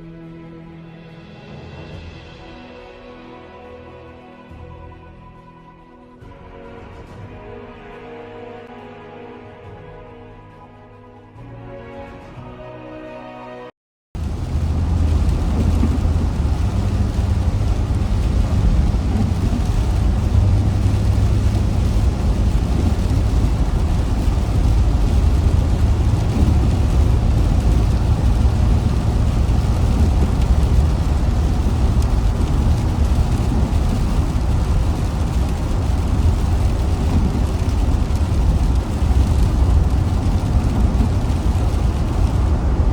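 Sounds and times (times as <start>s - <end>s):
car driving rumble: 14.2s - 42.9s
rain hiss: 14.2s - 42.9s.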